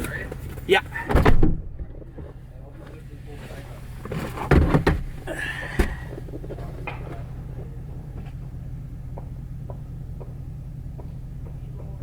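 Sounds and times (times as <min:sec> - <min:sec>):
knocks and clatter: 0:04.0 - 0:08.4, 0:09.1 - 0:12.0.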